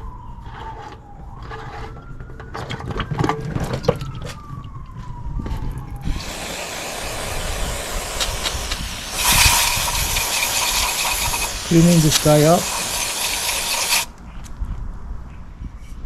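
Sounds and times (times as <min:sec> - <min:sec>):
distant siren wailing: 0:00.0 - 0:14.2
steady hiss: 0:06.0 - 0:14.1.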